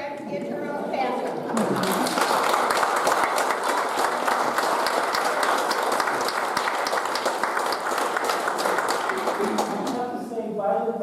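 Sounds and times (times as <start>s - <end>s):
congregation applauding: 1.4s - 10.2s.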